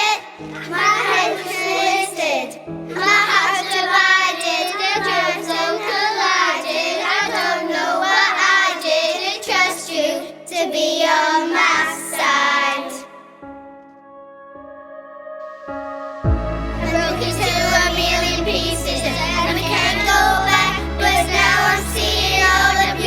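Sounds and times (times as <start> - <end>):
child singing with vibrato: 0.0 - 13.4, 15.2 - 23.0
backing track of held chords: 13.6 - 23.0.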